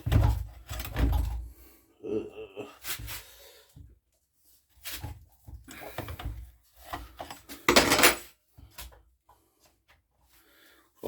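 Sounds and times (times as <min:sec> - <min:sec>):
metal tools clattering: 0:07.6 - 0:08.3.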